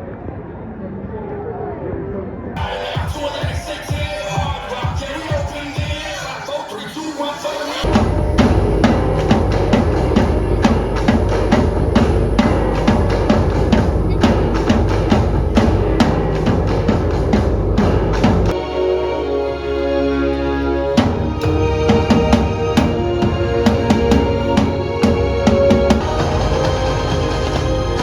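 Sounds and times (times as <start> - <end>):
music with drum beat and bass: 7.8 - 18.6, 21.0 - 28.0.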